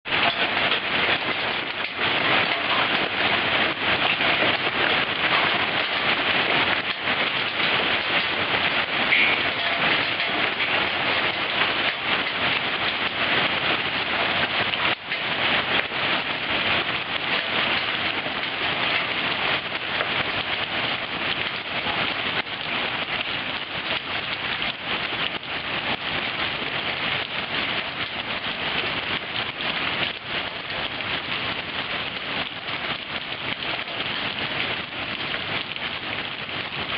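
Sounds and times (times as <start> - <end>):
heavy rain: 0.0 - 36.9
hailstones pelting surfaces: 0.1 - 36.9.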